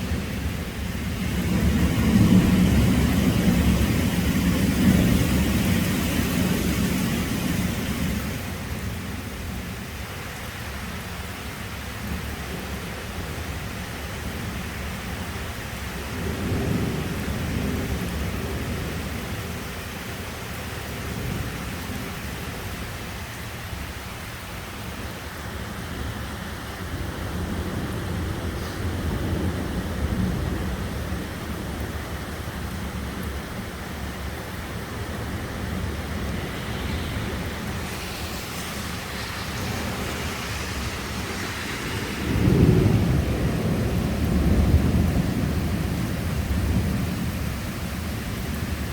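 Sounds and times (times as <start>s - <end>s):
thunder rolling: 0.0s - 9.1s, 34.6s - 48.9s
heavy rain falling: 0.0s - 48.9s.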